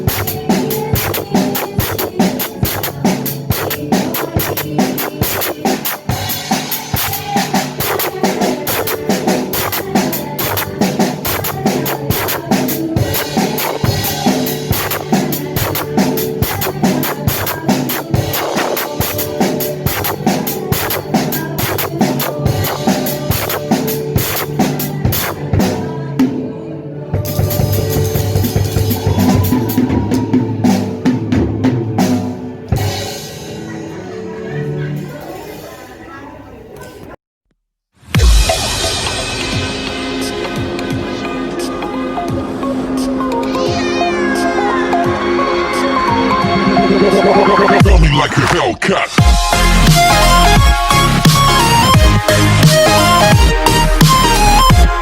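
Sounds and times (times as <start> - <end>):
music with drum beat: 0.0 - 26.4, 27.2 - 33.6, 38.1 - 48.4, 49.1 - 55.0
bass drum and snare hits: 38.0 - 40.0, 49.2 - 55.0.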